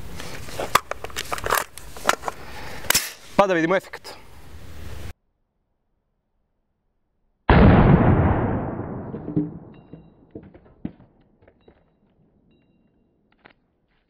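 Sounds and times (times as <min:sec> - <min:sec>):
rifle gunshot: 0:07.5 - 0:10.0.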